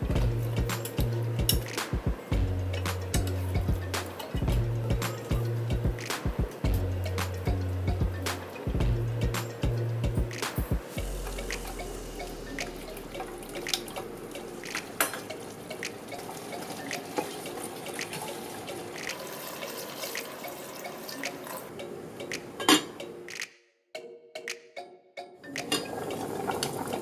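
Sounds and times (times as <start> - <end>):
kitchen water running: 19.1 - 21.7.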